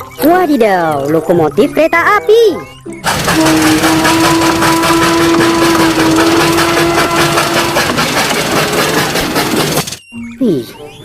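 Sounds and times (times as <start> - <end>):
small motor humming: 3.0 - 10.0.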